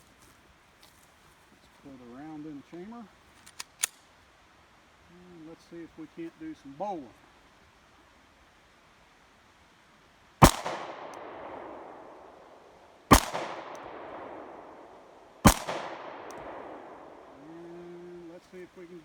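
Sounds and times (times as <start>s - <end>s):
pistol shots echoing: 10.4s - 12.4s, 13.1s - 17.4s.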